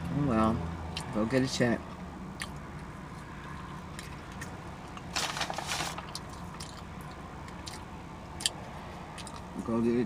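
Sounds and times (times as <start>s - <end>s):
mouth chewing food: 1.8s - 5.1s, 6.0s - 9.6s.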